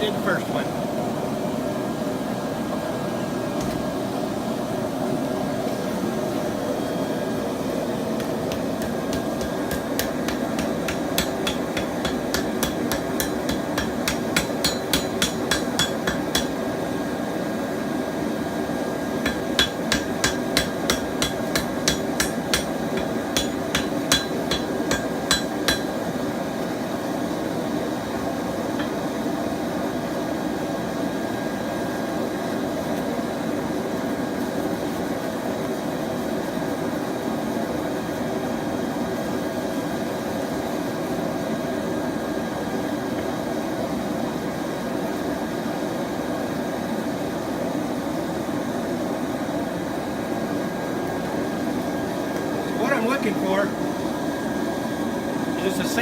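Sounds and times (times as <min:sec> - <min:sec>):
forge burner roaring: 0:00.0 - 0:56.0
hammer striking hot steel: 0:08.2 - 0:16.8, 0:19.0 - 0:26.2, 0:28.7 - 0:29.1.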